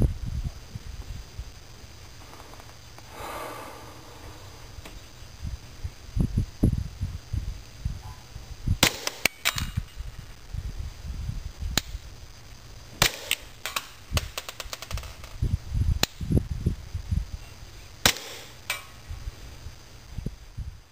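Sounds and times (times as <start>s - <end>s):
wind buffeting microphone: 5.4s - 8.8s, 15.3s - 17.4s.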